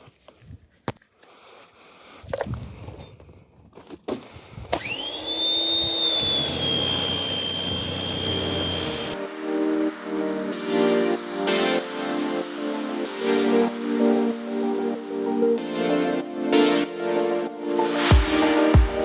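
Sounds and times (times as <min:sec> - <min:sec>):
pressure washer spraying: 0:04.8 - 0:09.2.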